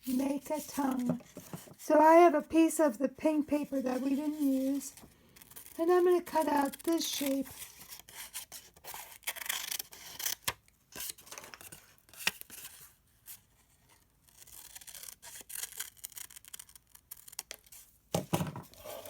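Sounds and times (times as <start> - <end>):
scissors cutting paper: 0.0 - 1.4, 5.5 - 7.6
paper handling: 0.0 - 1.8, 3.5 - 8.1.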